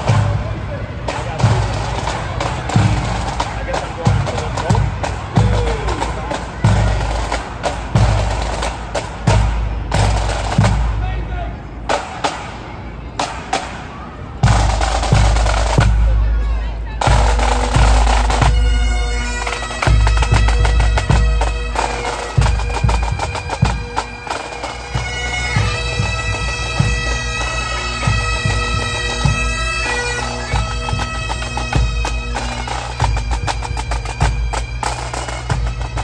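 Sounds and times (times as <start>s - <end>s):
drums beating: 0.0s - 36.0s
bagpipes playing melody: 14.5s - 36.0s.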